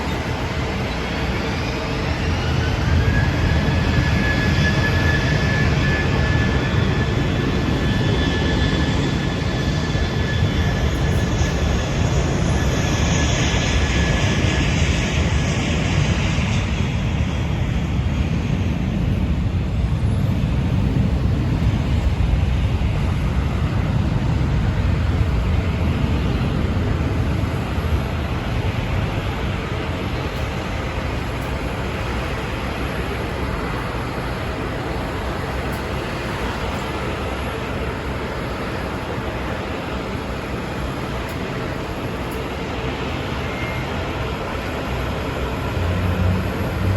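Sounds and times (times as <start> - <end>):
jet aircraft roar: 0.0 - 46.9.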